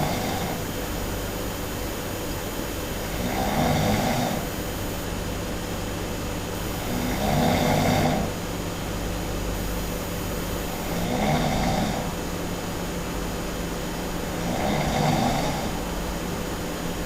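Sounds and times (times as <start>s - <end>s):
person snoring loudly: 0.0s - 0.6s, 3.1s - 4.5s, 6.8s - 8.4s, 10.8s - 12.2s, 14.3s - 15.8s.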